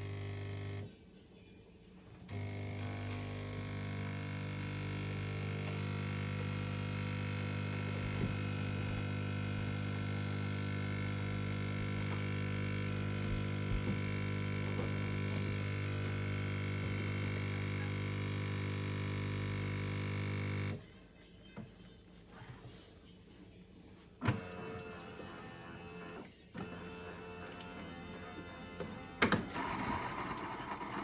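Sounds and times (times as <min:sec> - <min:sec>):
coffee machine humming: 0:00.0 - 0:00.9, 0:02.2 - 0:20.8, 0:24.2 - 0:31.0.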